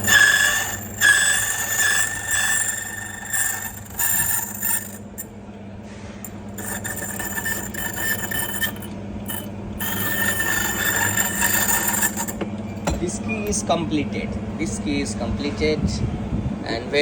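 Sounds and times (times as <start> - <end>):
cutter ringing on key metal: 0.0 - 5.3, 6.3 - 13.0.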